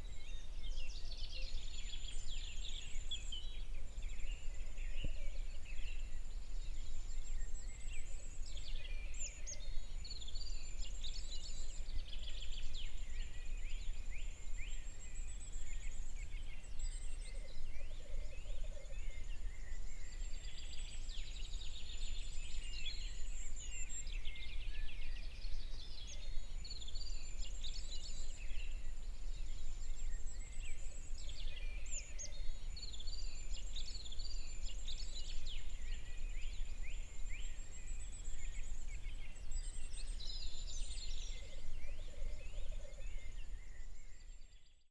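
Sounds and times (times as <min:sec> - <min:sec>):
chorus of birds chirping: 0:10.3 - 0:44.3.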